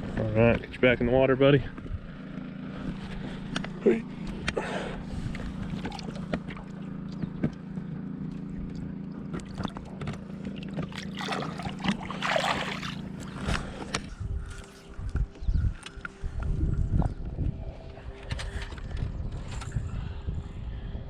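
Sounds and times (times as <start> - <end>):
low hum: 0.0 - 21.0
water sloshing around boat: 1.8 - 14.8
loud water splash: 10.9 - 13.2.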